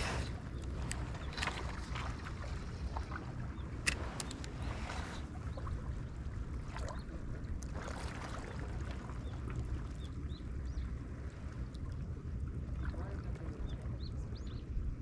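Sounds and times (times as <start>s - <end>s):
water rumbling: 0.0s - 15.0s
wind: 0.0s - 15.0s
small clicks and rustles: 0.6s - 2.3s.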